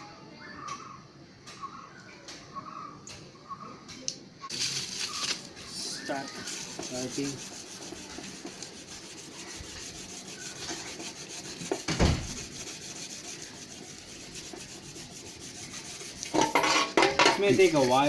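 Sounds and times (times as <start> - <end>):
foil scrubbing on metal: 4.5 - 18.0
knock: 11.8 - 12.4.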